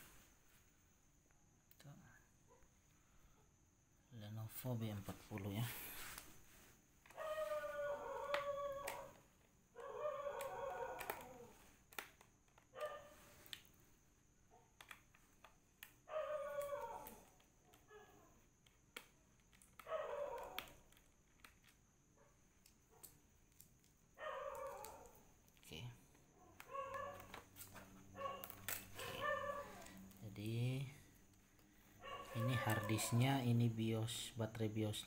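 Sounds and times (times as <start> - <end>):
pet animal whining: 7.1 - 9.2, 9.8 - 11.6, 16.1 - 18.3, 24.2 - 25.2, 26.4 - 30.2, 32.0 - 33.3.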